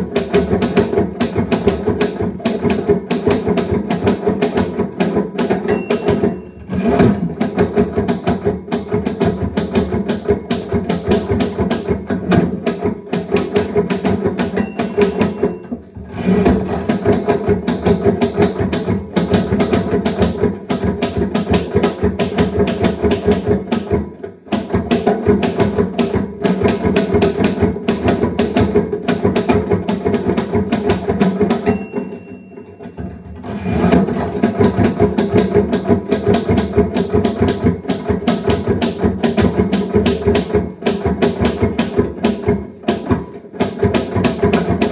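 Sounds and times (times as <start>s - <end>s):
typewriter key strikes: 5.6s - 6.6s, 14.6s - 15.7s, 31.6s - 33.3s
typewriter bell ding: 5.6s - 7.0s, 14.6s - 15.8s, 31.6s - 33.3s.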